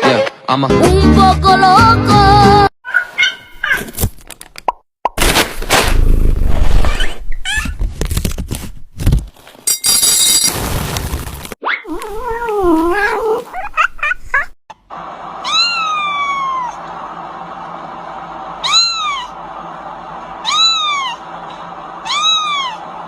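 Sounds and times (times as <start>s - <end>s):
cat meowing: 22.0s - 22.8s.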